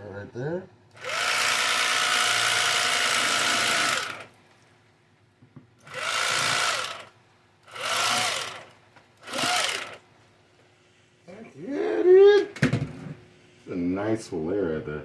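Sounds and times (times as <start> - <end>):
electric fillet knife humming: 1.0 - 4.3, 5.8 - 7.1, 7.7 - 10.0.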